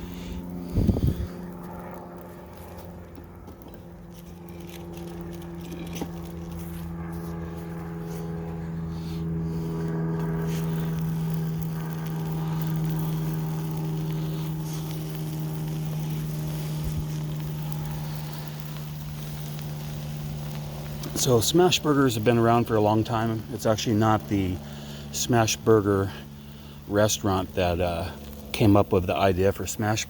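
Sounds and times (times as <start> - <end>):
motor-like drone: 0.0 - 30.0
buns sizzling on a griddle: 9.0 - 30.0.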